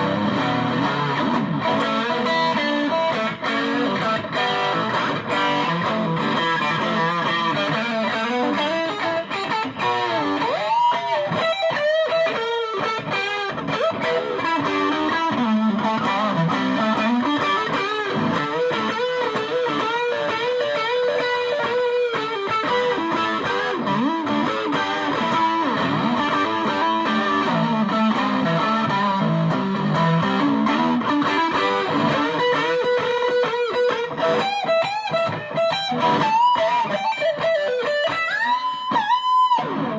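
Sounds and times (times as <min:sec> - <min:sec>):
distorted electric guitar: 0:00.0 - 0:39.9.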